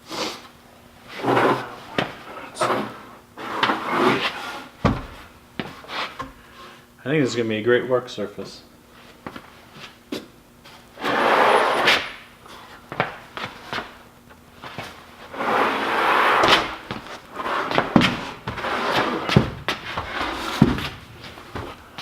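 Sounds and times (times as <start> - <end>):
wood scraping: 1.1 - 6.8, 11.0 - 12.7, 14.6 - 22.0
wood knocking and clunking: 4.8 - 6.4.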